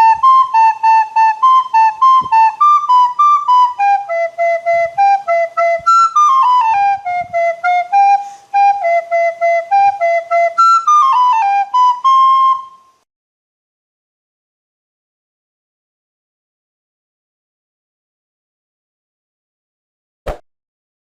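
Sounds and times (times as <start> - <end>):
flute playing quick melody: 0.0 - 12.9.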